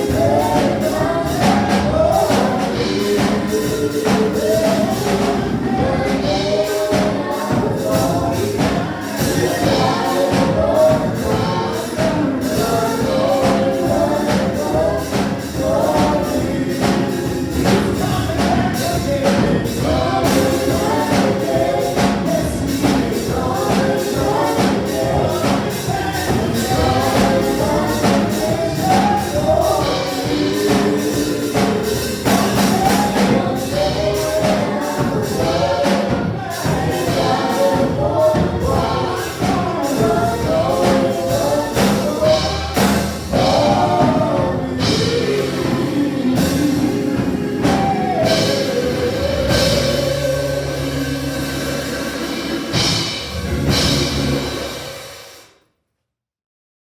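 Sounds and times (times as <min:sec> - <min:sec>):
steady percussion beat: 0:00.0 - 0:55.4
voices singing gospel: 0:00.0 - 0:55.4.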